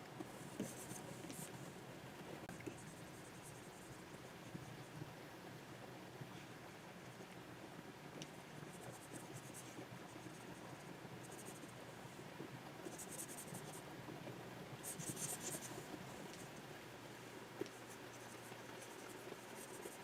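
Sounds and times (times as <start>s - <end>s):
faint room hiss: 0.0s - 20.0s
stylus scratching on tablet: 0.4s - 1.6s, 2.5s - 4.9s, 8.5s - 11.8s, 12.9s - 13.8s, 14.8s - 16.5s, 17.7s - 20.0s.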